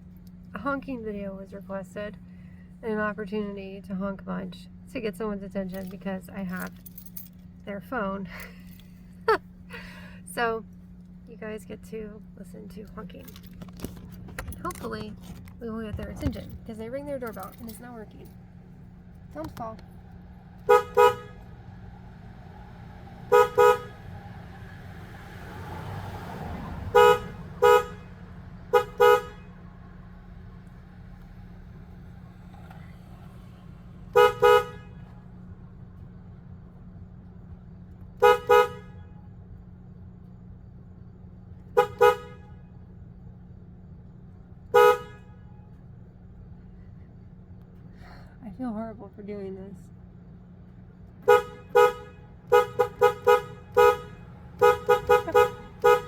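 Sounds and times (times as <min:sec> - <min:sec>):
car horn toots: 0:20.6 - 0:21.7, 0:23.3 - 0:24.1, 0:26.9 - 0:29.7, 0:34.1 - 0:35.2, 0:38.2 - 0:39.3, 0:41.7 - 0:42.8, 0:44.7 - 0:45.8, 0:51.2 - 0:56.0.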